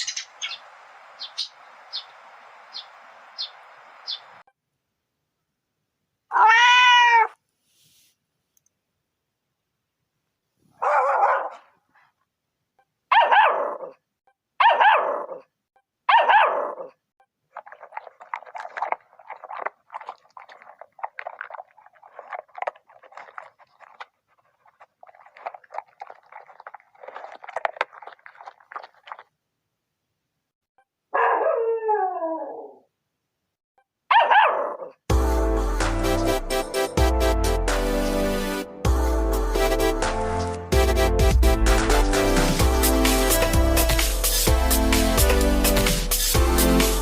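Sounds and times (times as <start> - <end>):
cat meow: 6.3 - 7.4
puppy cries: 6.3 - 7.4, 13.1 - 14.0, 14.6 - 15.4, 34.1 - 34.9
dog bark: 10.7 - 11.8, 13.1 - 14.0, 14.6 - 15.5, 16.1 - 17.0, 31.1 - 31.8, 34.1 - 35.0
dog eating crunching and chewing: 17.5 - 29.3.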